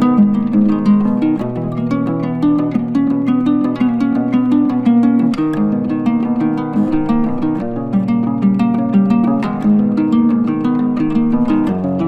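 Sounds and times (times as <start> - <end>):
plucked strings melody: 0.0 - 12.0.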